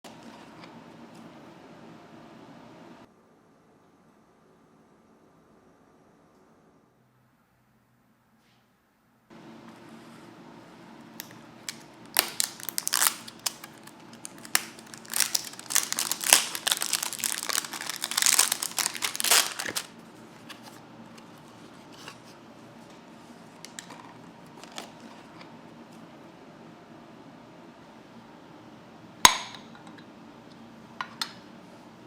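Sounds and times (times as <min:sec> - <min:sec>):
packaging crinkling and rustling: 0:11.2 - 0:20.8, 0:23.7 - 0:25.3.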